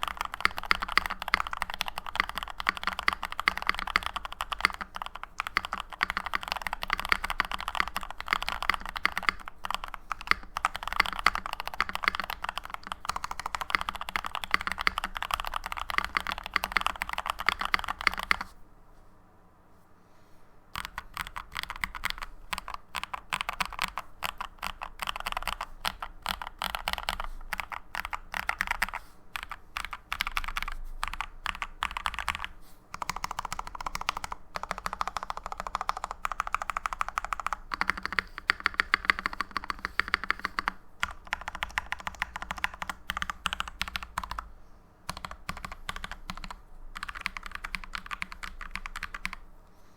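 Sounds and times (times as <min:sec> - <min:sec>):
mechanical keyboard typing: 0:00.0 - 0:18.5, 0:20.7 - 0:44.5, 0:45.1 - 0:49.4.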